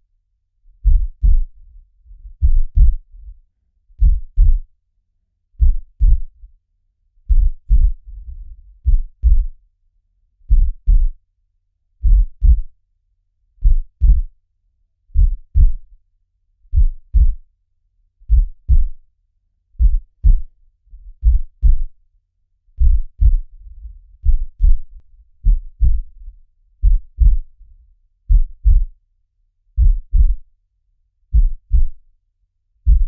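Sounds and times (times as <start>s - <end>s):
faint low rumble: 0.7s - 4.7s, 5.6s - 6.5s, 7.3s - 9.6s, 10.5s - 11.2s, 12.0s - 12.8s, 13.6s - 14.3s, 15.2s - 15.9s, 16.7s - 17.4s, 18.3s - 19.0s, 19.8s - 22.0s, 22.8s - 29.0s, 29.8s - 30.5s, 31.3s - 32.0s
heartbeat thumps: 0.8s - 1.6s, 2.3s - 3.1s, 4.0s - 4.7s, 5.6s - 6.3s, 7.3s - 9.6s, 10.5s - 11.2s, 12.0s - 12.7s, 13.6s - 14.3s, 15.2s - 15.8s, 16.7s - 17.4s, 18.3s - 19.0s, 19.8s - 20.5s, 21.2s - 22.0s, 22.8s - 27.6s, 28.3s - 28.9s, 29.8s - 30.4s, 31.3s - 32.0s.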